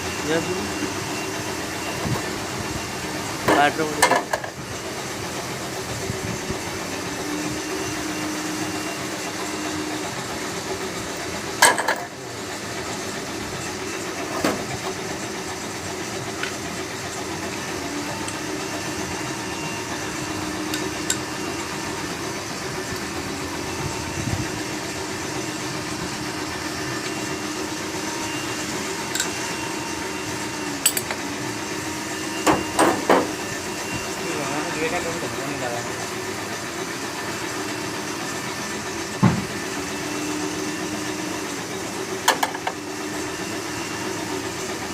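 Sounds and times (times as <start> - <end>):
background hum and hiss: 15.6 - 33.5
metal tools clinking on engine parts: 29.1 - 29.3, 30.9 - 31.2.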